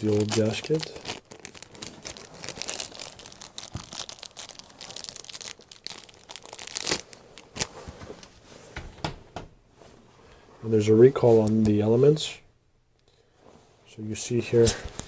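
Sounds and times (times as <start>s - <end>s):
plastic and paper packaging rustling: 0.0s - 8.5s, 14.6s - 15.0s.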